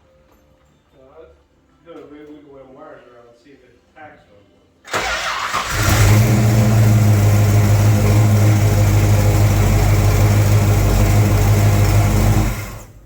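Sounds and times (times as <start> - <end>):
car engine running steadily: 5.7 - 13.0.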